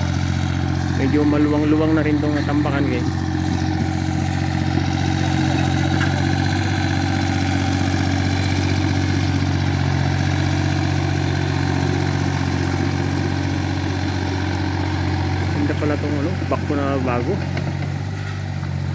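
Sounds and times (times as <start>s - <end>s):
backhoe engine running steadily: 0.0s - 18.9s.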